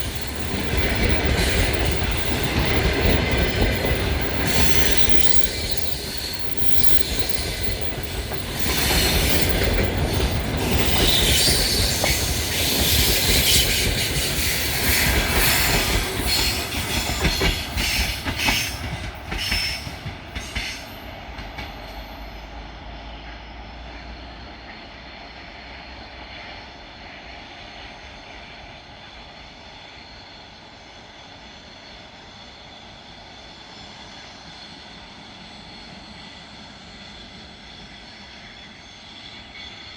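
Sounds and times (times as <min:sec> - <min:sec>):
wheels clicking over rail joints: 0:00.0 - 0:22.0
distant train rumble: 0:00.0 - 0:39.9
train wheels squealing: 0:00.0 - 0:39.9.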